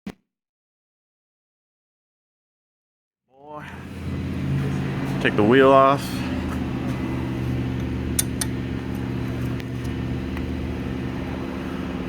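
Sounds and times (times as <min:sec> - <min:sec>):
low mechanical hum: 0:03.6 - 0:12.0.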